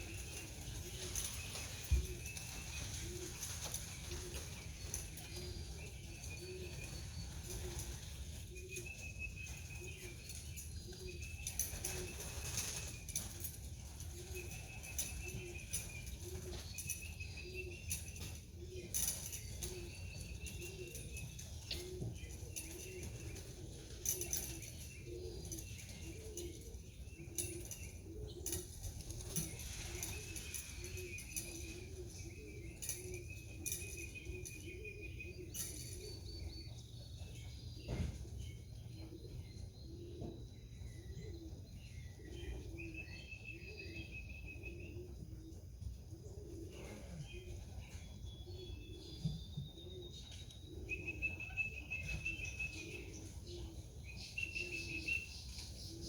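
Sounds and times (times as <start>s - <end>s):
pigeons cooing: 0.0s - 56.0s
bird chirps: 46.7s - 56.0s.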